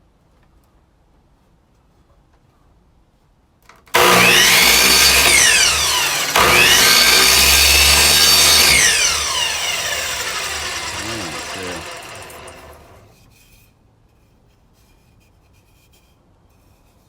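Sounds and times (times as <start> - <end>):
power saw cutting wood: 4.0 - 13.1.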